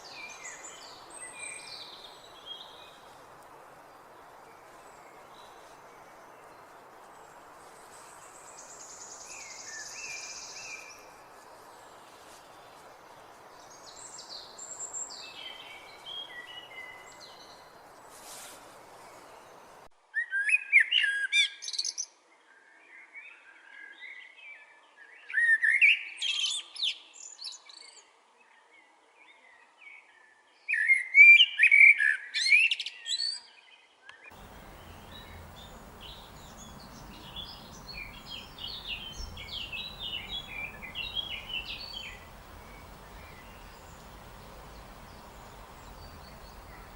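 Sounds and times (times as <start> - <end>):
background hiss: 0.0 - 19.9, 34.3 - 46.9
songbirds chirping and singing: 34.1 - 46.9
low hum: 34.4 - 46.9.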